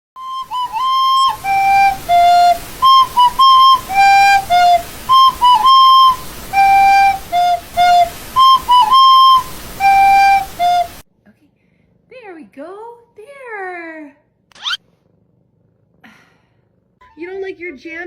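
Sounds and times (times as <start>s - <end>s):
flute-like melody: 0.2s - 11.0s.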